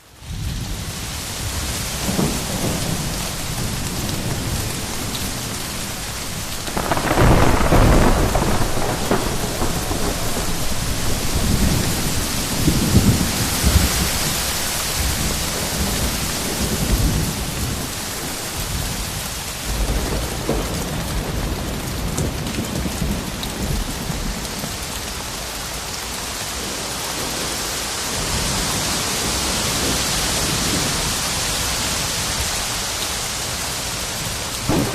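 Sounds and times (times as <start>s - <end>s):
steady rain: 0.0s - 34.9s
wind gusting: 0.6s - 19.7s, 34.7s - 34.9s.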